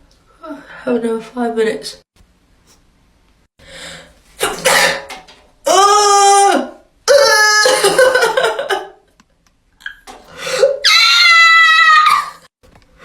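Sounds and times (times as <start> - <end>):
person crying out: 5.7 - 8.2, 10.6 - 12.4.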